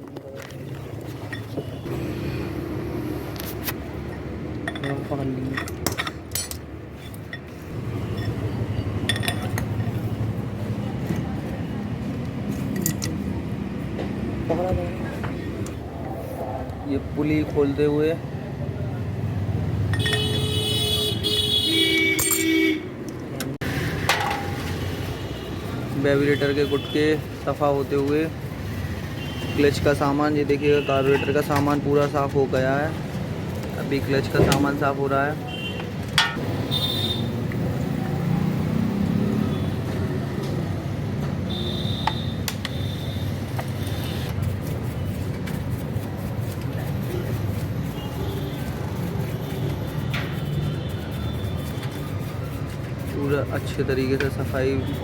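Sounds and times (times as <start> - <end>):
traffic rumble: 0.0 - 55.0
dual-tone vehicle horn honking: 20.0 - 22.9, 41.5 - 43.3.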